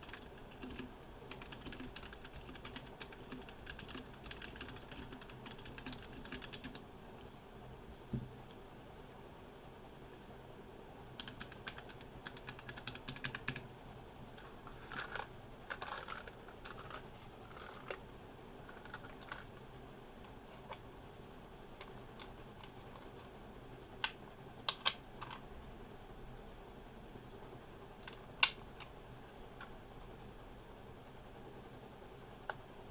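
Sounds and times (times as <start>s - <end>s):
mechanical keyboard typing: 0.0s - 6.8s, 11.2s - 13.6s, 14.8s - 18.0s, 18.7s - 19.6s.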